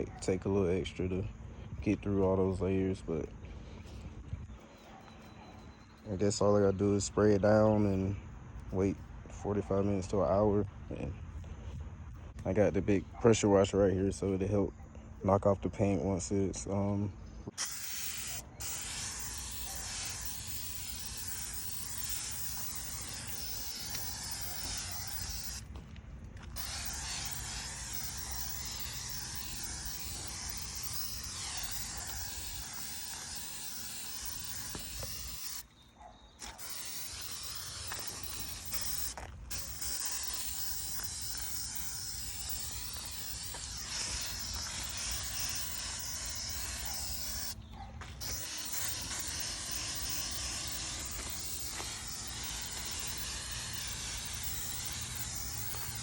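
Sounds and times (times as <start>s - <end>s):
pressure washer spraying metal: 17.5s - 25.7s, 26.4s - 35.6s, 36.4s - 56.0s.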